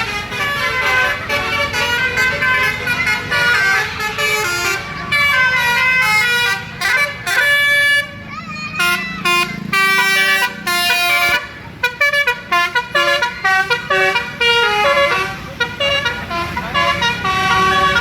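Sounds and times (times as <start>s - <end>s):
bus musical horn melody: 0.0s - 18.0s.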